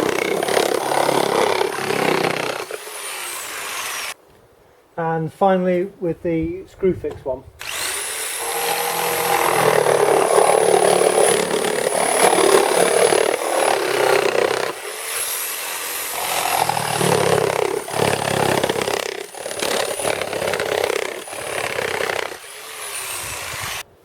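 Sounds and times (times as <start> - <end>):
jigsaw cutting wood: 0.0 - 4.2, 7.6 - 23.8.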